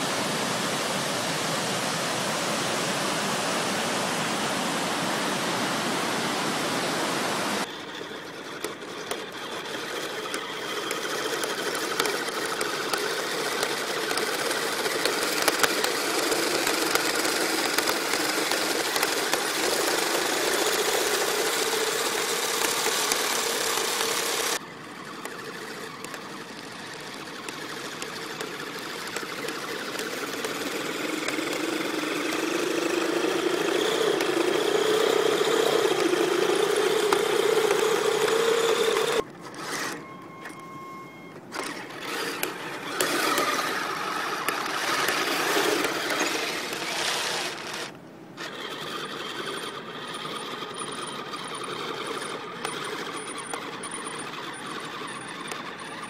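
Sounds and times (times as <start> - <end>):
steady rushing hiss: 0.0 - 7.6
electric motor and gear whine: 0.0 - 56.0
small gear clicks: 7.6 - 40.8, 41.4 - 56.0.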